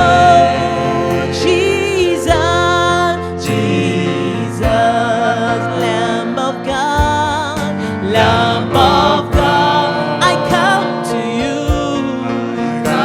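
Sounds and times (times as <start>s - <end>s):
person singing with vibrato: 7.7s - 13.0s
sustained keyboard chords: 7.8s - 10.9s
drum hits: 8.2s - 9.9s.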